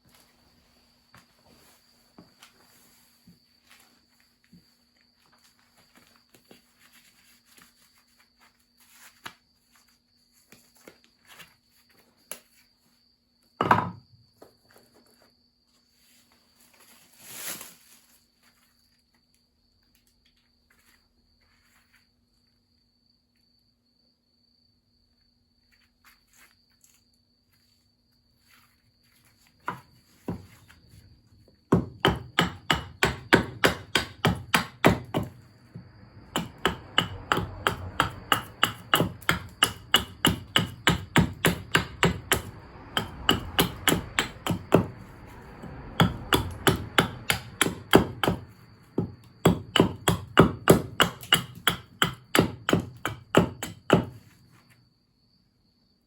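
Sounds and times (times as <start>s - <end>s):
blade chopping wood: 31.8s - 35.4s, 36.3s - 45.0s, 45.8s - 54.2s.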